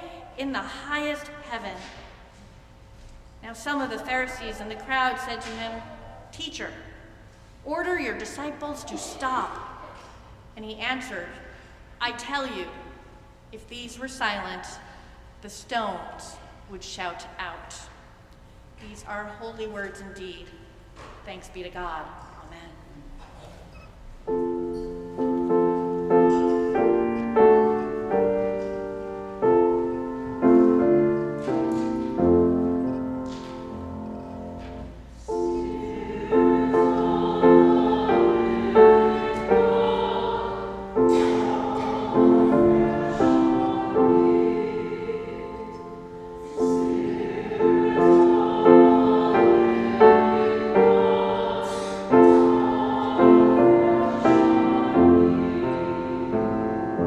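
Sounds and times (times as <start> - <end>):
slow piano chords: 24.2 - 57.0.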